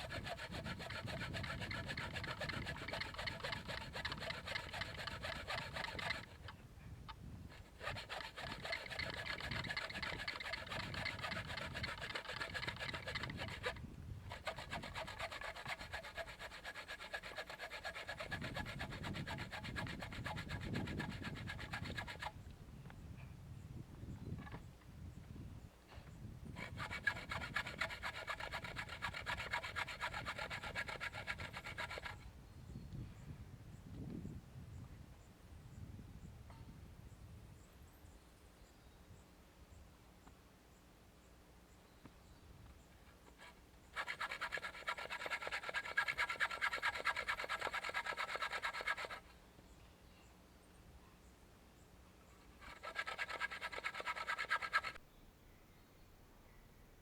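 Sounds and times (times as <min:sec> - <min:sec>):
hand tool rasping on wood: 0:00.0 - 0:06.5, 0:07.5 - 0:22.3, 0:26.6 - 0:32.2, 0:43.4 - 0:49.2, 0:52.6 - 0:55.0.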